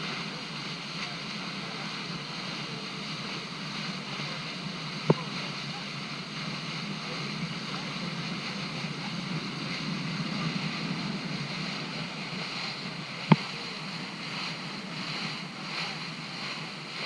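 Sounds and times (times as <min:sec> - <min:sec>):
wind and water rushing: 0:06.0 - 0:17.0.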